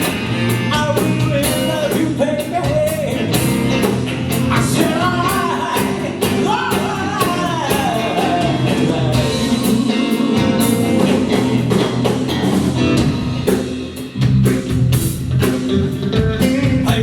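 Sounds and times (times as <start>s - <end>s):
drum kit: 0.0s - 17.0s
electric guitar: 0.0s - 17.0s
person singing: 4.5s - 12.2s.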